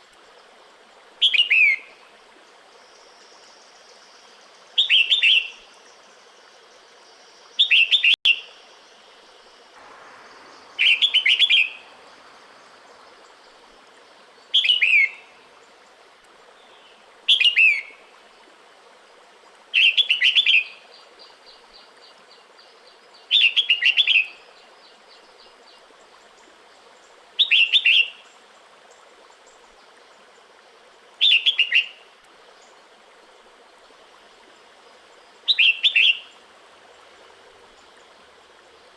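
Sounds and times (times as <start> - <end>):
bird giving bright falling calls: 9.8 - 15.3.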